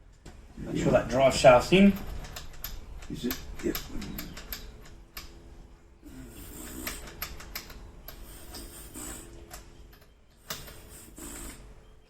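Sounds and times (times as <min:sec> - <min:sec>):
small parts clicking: 0:01.5 - 0:11.7
hand tools scraping: 0:06.1 - 0:11.7.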